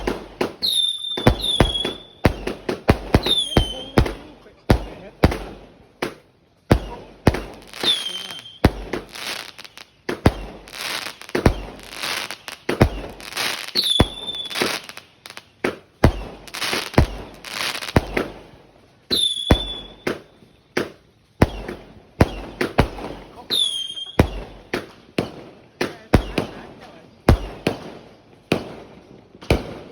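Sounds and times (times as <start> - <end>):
falling firework whistle: 0.0 - 2.5, 7.8 - 8.6, 12.8 - 14.8, 19.1 - 20.6
fireworks booms with hiss: 0.0 - 29.9.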